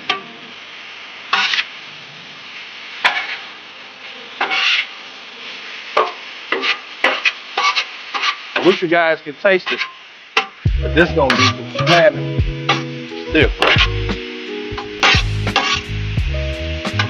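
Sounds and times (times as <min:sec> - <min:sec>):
meat sizzling in a frying pan: 0:00.0 - 0:17.0
utensil scraping a pan: 0:01.4 - 0:01.7, 0:04.4 - 0:04.9, 0:06.5 - 0:08.7, 0:09.6 - 0:10.0, 0:15.0 - 0:15.9.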